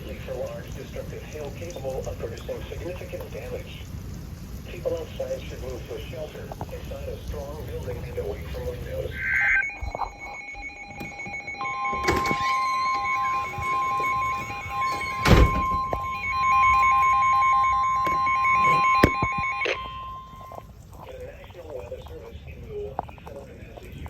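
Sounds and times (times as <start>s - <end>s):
steady lower tone: 8.2s - 20.7s
steady warning alarm tone: 8.8s - 20.7s
pulsing electronic beep: 9.1s - 20.6s.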